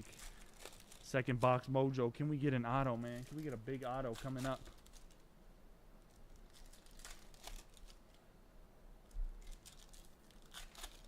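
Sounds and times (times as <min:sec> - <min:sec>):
wrappers tearing and crinkling: 0:00.0 - 0:01.5, 0:02.8 - 0:05.2, 0:06.1 - 0:08.2, 0:09.4 - 0:11.0.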